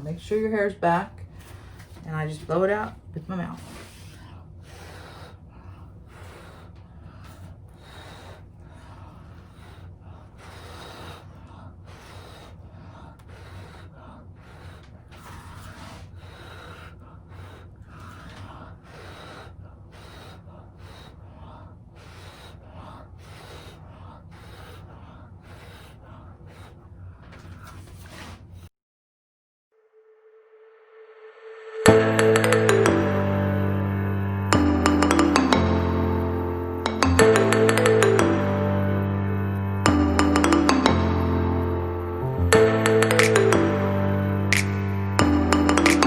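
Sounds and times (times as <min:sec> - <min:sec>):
quick breaths: 0:01.2 - 0:02.1, 0:03.0 - 0:28.7
person blowing puffs: 0:31.8 - 0:46.0.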